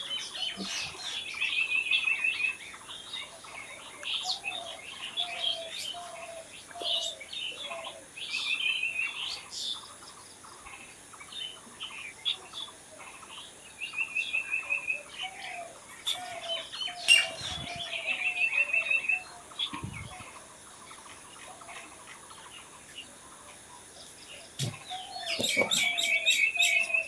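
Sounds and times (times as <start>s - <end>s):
birds chirping: 0.0s - 27.0s
rapid bird trill: 24.0s - 27.0s.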